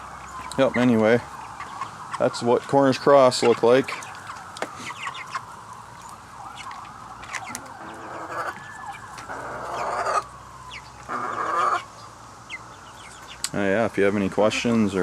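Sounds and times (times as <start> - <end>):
chickens peeping and trilling: 0.0 - 15.0.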